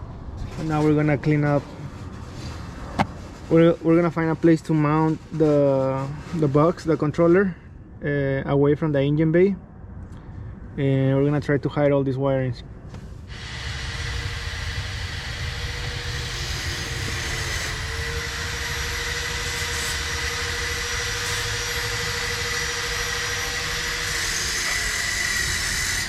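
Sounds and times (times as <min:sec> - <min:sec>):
machine running hum: 0:13.2 - 0:26.0.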